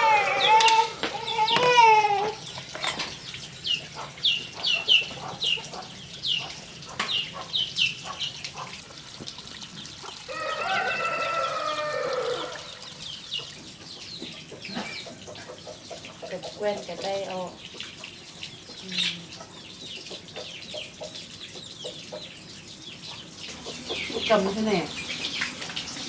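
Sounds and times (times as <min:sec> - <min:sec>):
rooster crowing: 0:00.0 - 0:02.4, 0:10.3 - 0:12.8
chickens chirping: 0:00.0 - 0:09.0, 0:09.7 - 0:26.0.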